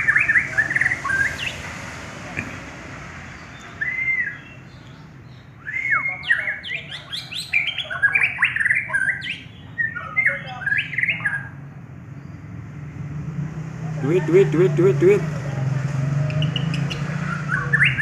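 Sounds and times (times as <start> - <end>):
bird singing whistles: 3.6 - 4.6, 5.6 - 11.4, 16.3 - 18.0.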